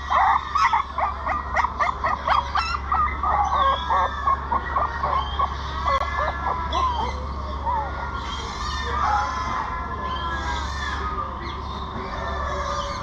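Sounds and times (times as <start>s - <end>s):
puppies whining and yelping: 0.0s - 7.2s
steady low hum: 0.0s - 13.0s.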